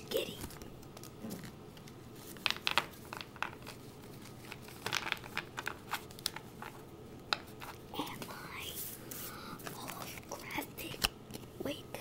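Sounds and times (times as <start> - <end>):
wrapper and cards crinkling: 0.1 - 6.8.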